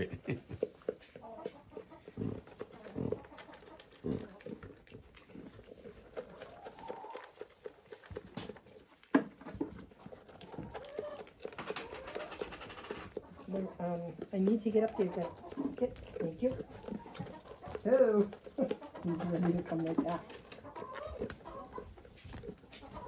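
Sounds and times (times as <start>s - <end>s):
barn animals calling: 10.0s - 23.0s.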